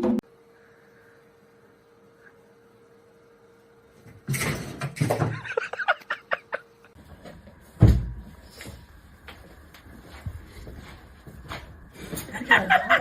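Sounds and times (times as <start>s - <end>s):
heavy thump: 7.8s - 8.3s.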